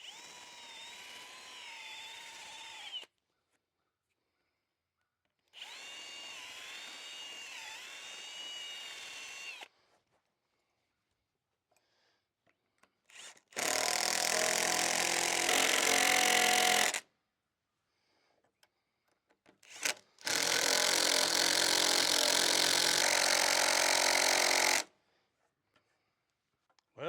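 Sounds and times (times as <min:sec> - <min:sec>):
power drill running: 0:00.0 - 0:03.1, 0:05.6 - 0:09.7, 0:13.1 - 0:17.0, 0:19.6 - 0:24.9.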